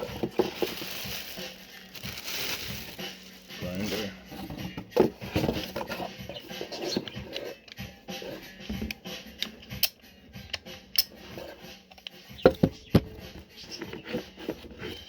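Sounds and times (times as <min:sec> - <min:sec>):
rustling: 0:00.0 - 0:07.6.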